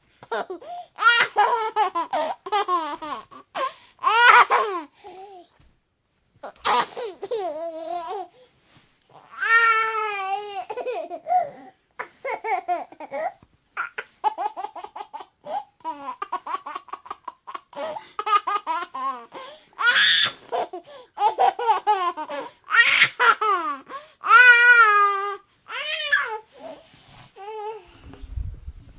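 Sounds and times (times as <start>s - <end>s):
baby laughing: 0.2s - 4.9s, 6.4s - 8.3s, 9.9s - 25.0s.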